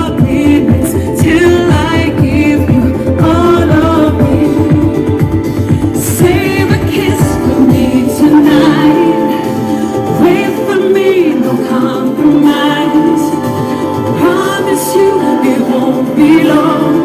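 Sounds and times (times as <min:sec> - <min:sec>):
live band playing pop music: 0:00.0 - 0:17.0
wavering sung vocal notes: 0:06.0 - 0:17.0.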